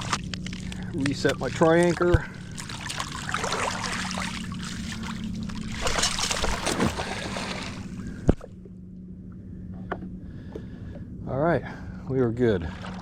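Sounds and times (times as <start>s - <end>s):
shallow water sloshing: 0.0s - 8.9s, 12.5s - 13.0s
steady low hum: 0.0s - 13.0s.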